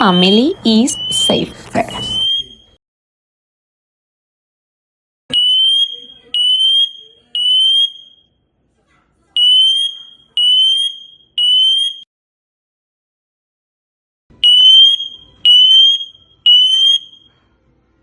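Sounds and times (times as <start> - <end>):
smoke alarm beeping: 0.0 - 2.7, 5.3 - 8.2, 9.4 - 12.0, 14.4 - 17.3.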